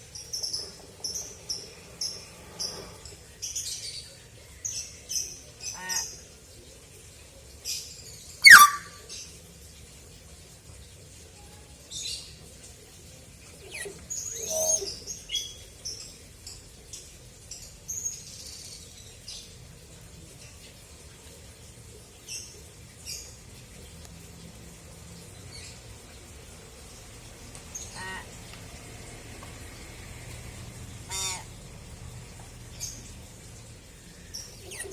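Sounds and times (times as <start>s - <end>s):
bird chirps and whistled calls: 8.4s - 9.0s, 13.8s - 15.5s.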